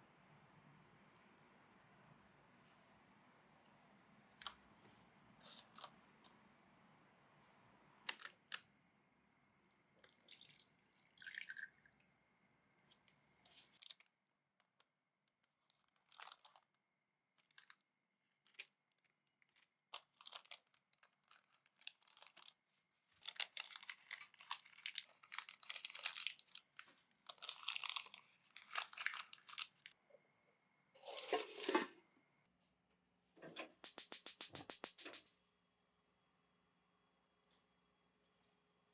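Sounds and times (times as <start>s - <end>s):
soft crinkling and rustling: 12.8s - 30.0s
small clicks and taps: 33.6s - 35.3s.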